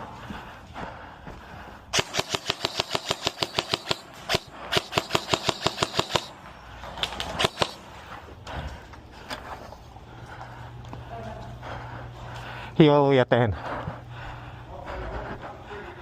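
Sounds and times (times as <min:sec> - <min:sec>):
airsoft gun firing rapid bursts: 0:02.0 - 0:06.4, 0:07.1 - 0:07.8.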